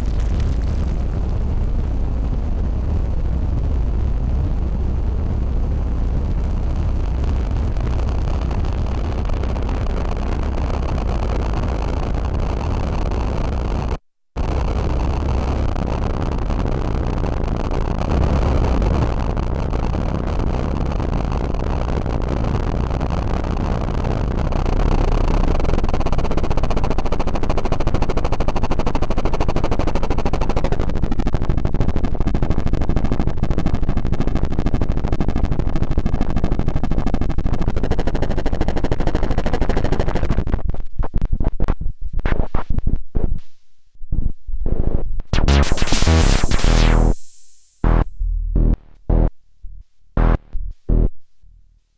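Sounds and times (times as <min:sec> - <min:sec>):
distorted synthesizer bass: 0:45.4 - 0:51.7.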